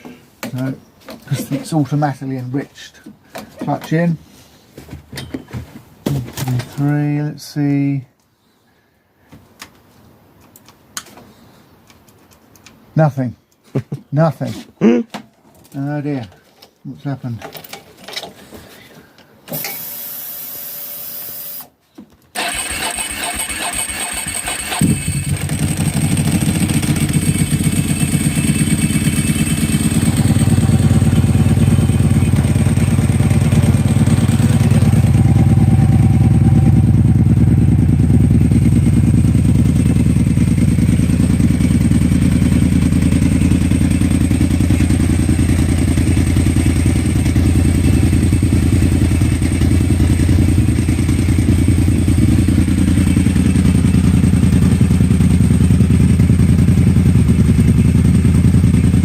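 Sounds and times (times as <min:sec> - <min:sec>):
motorcycle engine starting and idling: 0:22.4 - 0:59.0.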